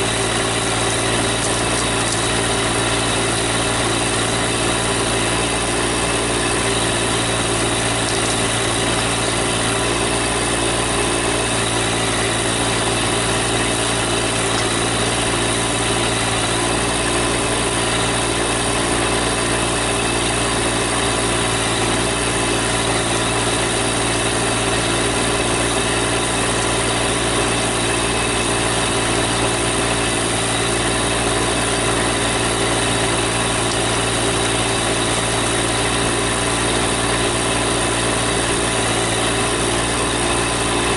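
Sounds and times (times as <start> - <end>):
tractor diesel engine running: 0.0 - 40.9.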